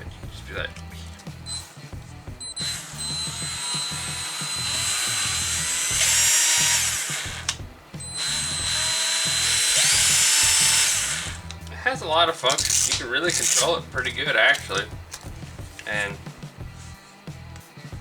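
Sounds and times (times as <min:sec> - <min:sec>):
polisher motor whining: 0:01.2 - 0:01.8, 0:02.4 - 0:11.6.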